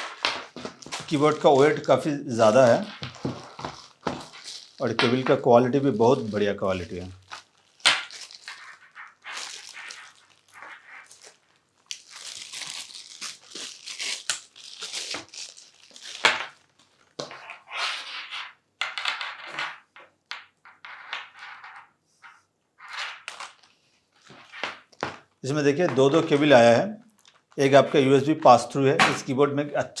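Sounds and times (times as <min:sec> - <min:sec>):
plastic packaging crinkling: 0:00.0 - 0:17.5, 0:23.3 - 0:29.3.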